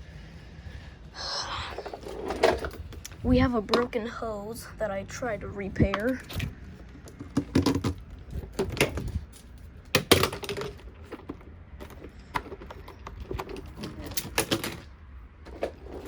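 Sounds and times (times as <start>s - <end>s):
plastic parts clicking and rattling: 1.8s - 3.9s, 5.9s - 16.0s.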